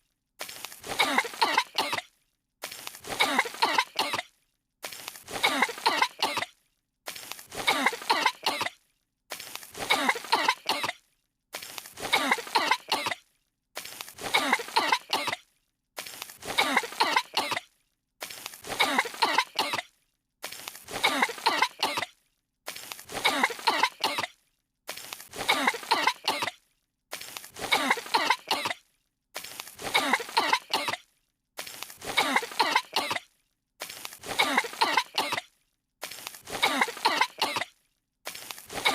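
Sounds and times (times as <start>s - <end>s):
cartoon voices coughing: 0.9s - 2.1s, 3.0s - 4.3s, 5.3s - 6.5s, 7.5s - 8.8s, 9.8s - 11.0s, 12.0s - 13.2s, 14.2s - 15.4s, 16.4s - 17.7s, 18.6s - 19.9s, 20.9s - 22.1s, 23.1s - 24.3s, 25.3s - 26.6s, 27.6s - 28.8s, 29.8s - 31.0s, 32.0s - 33.3s, 34.2s - 35.5s, 36.5s - 37.7s.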